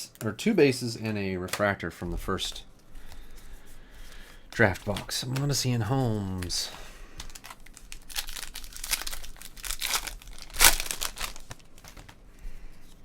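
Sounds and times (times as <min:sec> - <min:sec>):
foil wrapper tearing and crinkling: 0:04.6 - 0:12.2.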